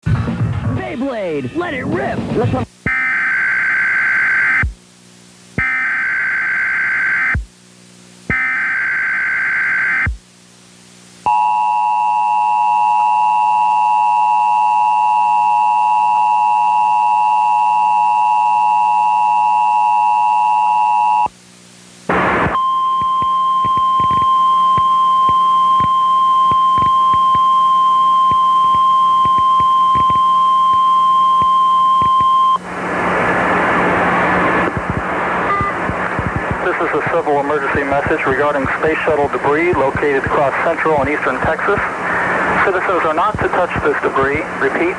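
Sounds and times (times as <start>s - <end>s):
static hiss: 0.5s - 44.9s
steady warning tone: 2.8s - 4.8s, 5.6s - 7.5s, 8.3s - 10.2s, 22.5s - 32.7s, 33.8s - 41.6s
screeching digital data bursts: 2.9s - 4.7s, 5.6s - 7.4s, 8.3s - 10.1s, 22.5s - 32.6s
two-note attention signal: 35.5s - 35.8s.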